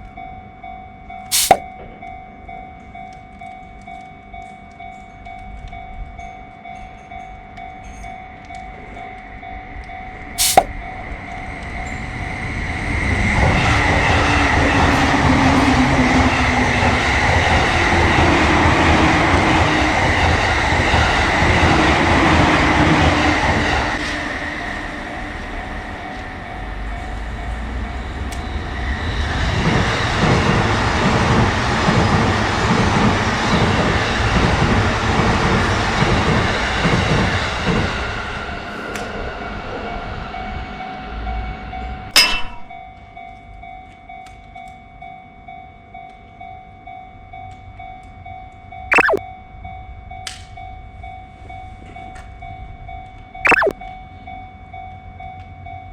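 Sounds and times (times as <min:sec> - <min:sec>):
sharp clack: 0:01.3 - 0:01.7, 0:10.4 - 0:10.7, 0:42.2 - 0:42.8
electric train passing: 0:08.8 - 0:41.8.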